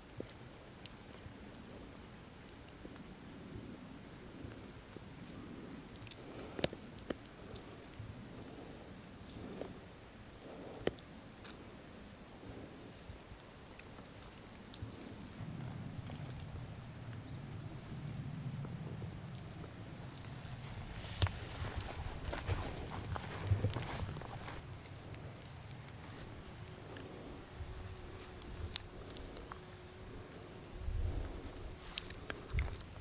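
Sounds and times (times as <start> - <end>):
footsteps on rocky trail: 20.0 - 24.7.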